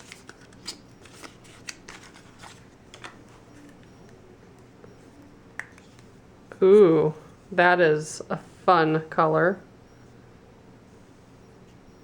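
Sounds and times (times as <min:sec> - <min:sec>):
packaging clicks and rustles: 0:00.0 - 0:04.2.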